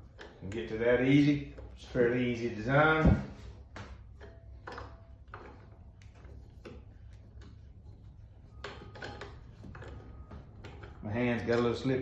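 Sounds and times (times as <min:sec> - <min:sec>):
low steady hum: 0:00.0 - 0:12.0
clicks and knocks of metal parts: 0:03.6 - 0:07.6, 0:08.5 - 0:12.0.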